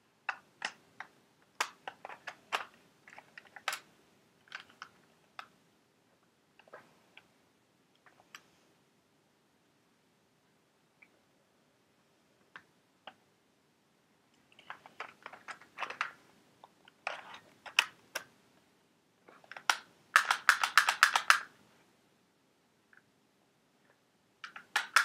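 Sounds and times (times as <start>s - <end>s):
hard plastic clicking: 19.3s - 21.5s, 24.4s - 25.0s.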